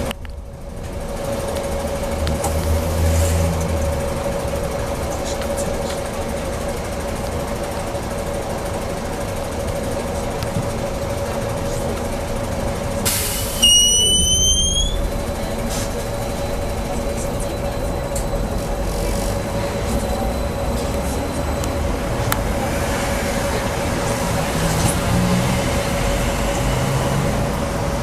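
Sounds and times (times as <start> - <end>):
trolleybus hum and rumble: 0.0 - 28.0
short rising squeal: 13.4 - 15.1.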